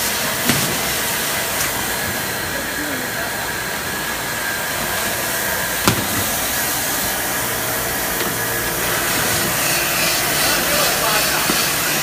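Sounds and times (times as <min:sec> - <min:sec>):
machine running: 0:00.0 - 0:12.0.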